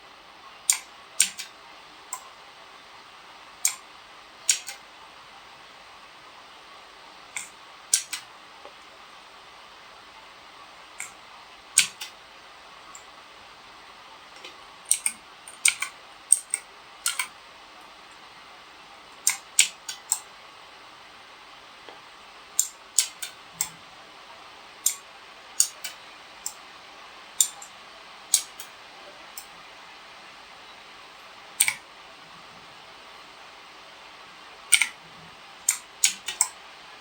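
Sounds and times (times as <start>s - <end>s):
mechanical keyboard key clicks: 14.9s - 17.3s, 35.7s - 36.5s.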